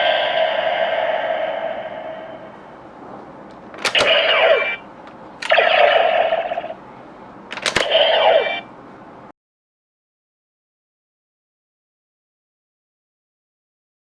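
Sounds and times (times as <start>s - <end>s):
toy click: 3.8s - 4.7s, 5.4s - 6.7s, 7.5s - 8.5s.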